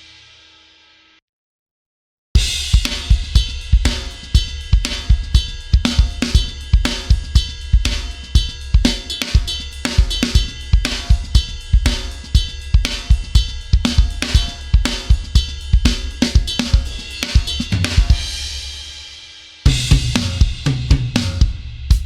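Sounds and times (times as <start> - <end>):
drum kit groove: 2.4 - 22.0.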